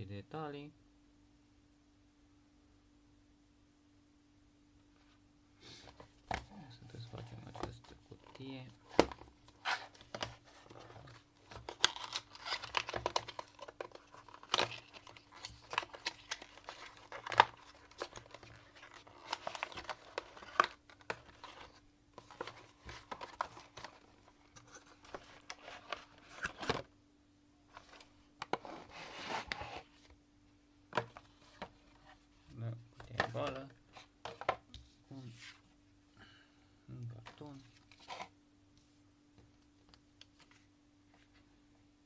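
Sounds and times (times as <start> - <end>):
cardboard rustling and tearing: 8.3 - 26.9.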